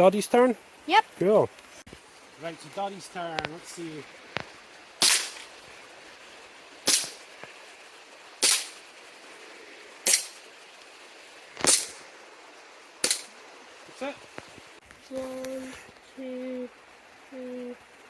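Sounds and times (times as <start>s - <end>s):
gas pistol shots cracking: 5.0s - 5.5s, 6.9s - 7.2s, 8.4s - 8.8s, 10.1s - 10.4s, 11.6s - 12.0s, 13.0s - 13.3s.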